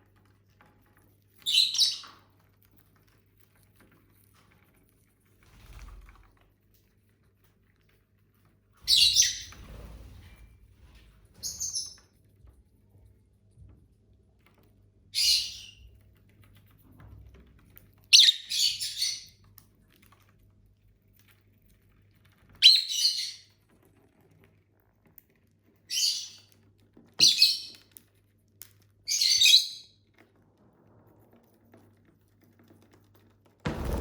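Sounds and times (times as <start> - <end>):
lovebirds chirping: 8.9 - 9.5, 18.2 - 19.3.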